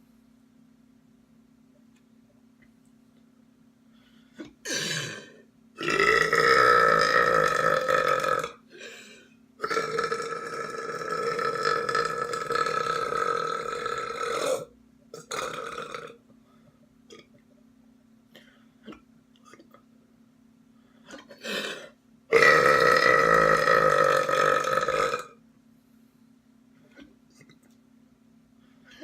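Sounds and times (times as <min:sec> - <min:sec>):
person belching: 0:04.4 - 0:08.6, 0:09.6 - 0:16.2, 0:21.1 - 0:25.4.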